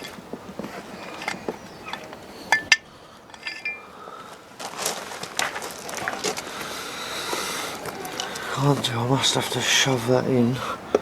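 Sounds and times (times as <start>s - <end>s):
metal tools clinking on engine: 0.0s - 3.9s
rustling handling noise: 0.0s - 9.9s.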